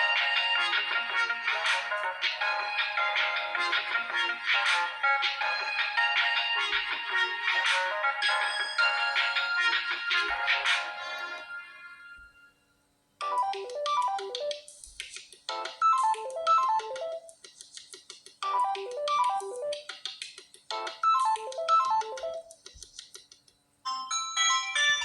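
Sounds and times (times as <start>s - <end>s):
phone ringtone melody: 5.0s - 12.3s, 13.2s - 14.6s, 15.5s - 17.3s, 18.4s - 19.8s, 20.8s - 22.5s, 23.9s - 25.0s.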